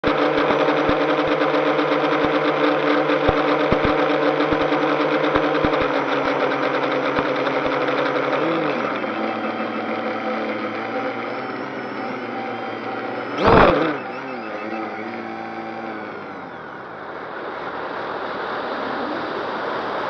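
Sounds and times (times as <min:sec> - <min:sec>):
drone motors whining: 0:00.0 - 0:20.0
wind: 0:09.9 - 0:20.0.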